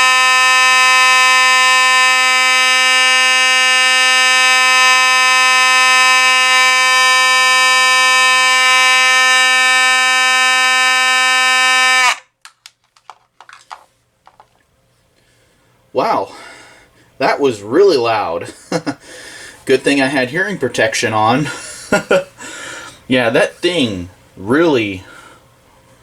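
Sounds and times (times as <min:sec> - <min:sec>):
fire alarm horn buzzing: 0:00.0 - 0:12.2.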